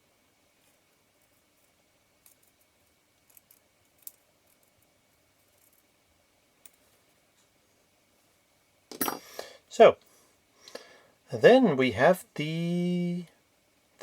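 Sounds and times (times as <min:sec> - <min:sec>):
small metal parts clicking: 0:02.2 - 0:04.9.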